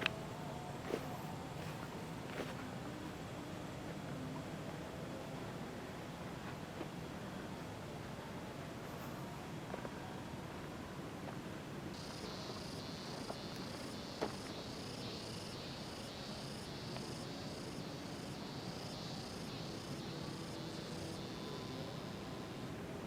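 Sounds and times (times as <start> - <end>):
faint background hiss: 0.0 - 23.0
insect calling in pulses: 12.0 - 22.5.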